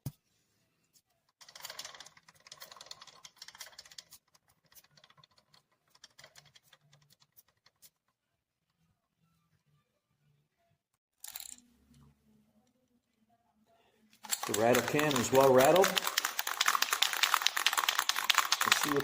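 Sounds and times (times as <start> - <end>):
aerosol can rattling when shaken: 14.2 - 19.0.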